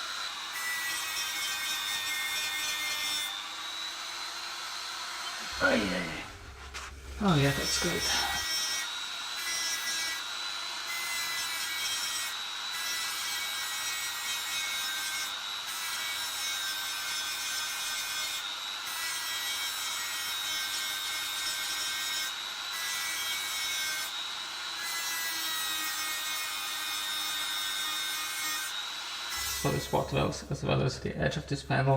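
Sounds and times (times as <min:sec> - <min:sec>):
grinding hiss on steel: 0:05.4 - 0:30.3.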